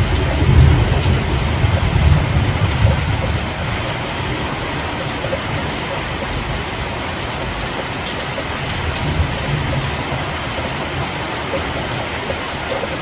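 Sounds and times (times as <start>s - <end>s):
steady rain hiss: 0.0s - 13.0s.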